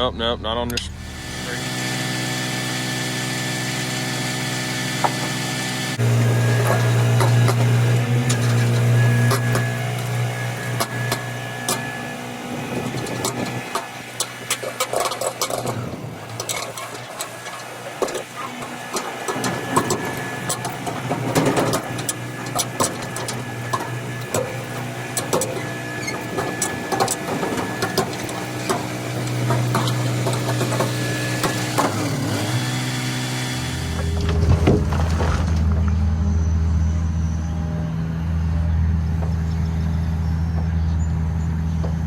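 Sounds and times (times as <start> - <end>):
excavator engine running: 0.0 - 42.0
metal clanks and knocks: 5.0 - 5.4, 6.4 - 32.5, 33.9 - 36.0.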